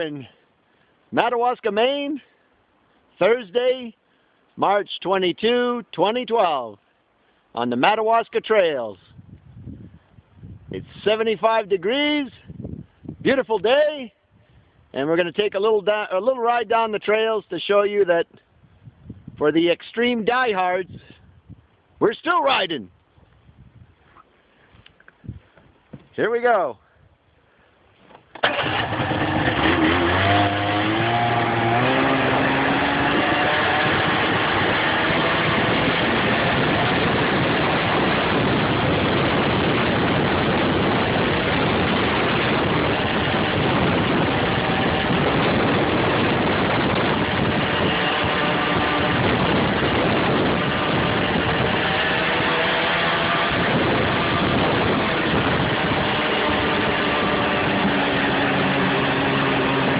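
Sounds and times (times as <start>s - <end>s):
snowmobile engine running: 28.4s - 59.9s.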